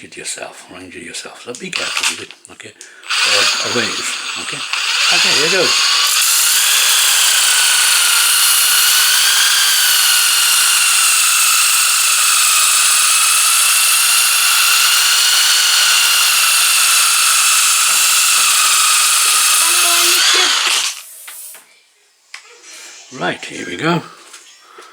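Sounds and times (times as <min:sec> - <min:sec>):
power sander high whine: 0:03.1 - 0:21.2.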